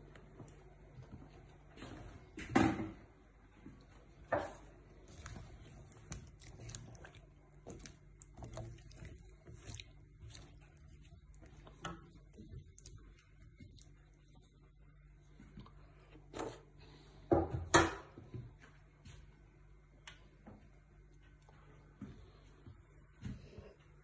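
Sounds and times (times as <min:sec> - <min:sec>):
soft squishy sounds: 0:03.4 - 0:17.1
cooking handling knocks and clatters: 0:17.3 - 0:18.5.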